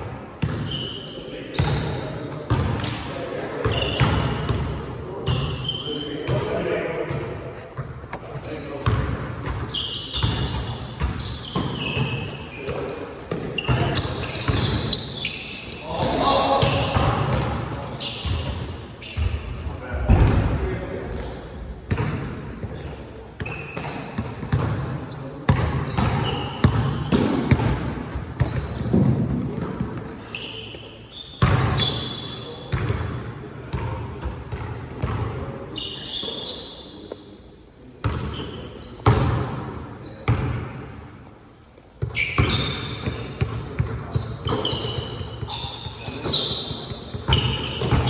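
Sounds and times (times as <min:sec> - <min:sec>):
sneaker squeaks on floor: 0:00.1 - 0:06.4, 0:07.8 - 0:19.6, 0:21.1 - 0:29.2, 0:30.2 - 0:33.1, 0:34.5 - 0:39.4, 0:40.0 - 0:41.0, 0:42.0 - 0:48.0
basketball bouncing on court: 0:00.4 - 0:00.8, 0:01.6 - 0:03.0, 0:03.6 - 0:05.7, 0:07.8 - 0:15.4, 0:16.6 - 0:19.5, 0:21.9 - 0:30.0, 0:31.4 - 0:32.1, 0:32.7 - 0:35.4, 0:38.0 - 0:39.7, 0:42.0 - 0:48.0
players calling out: 0:11.8 - 0:18.2.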